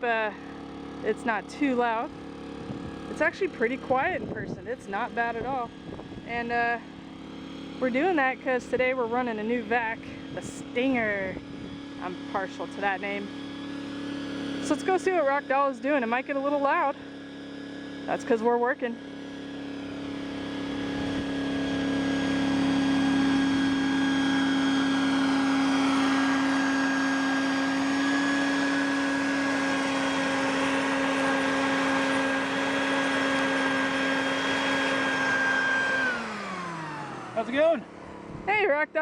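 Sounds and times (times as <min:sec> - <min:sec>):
motor spinning down: 0:00.0 - 0:39.0
vacuum motor whine: 0:00.0 - 0:39.0.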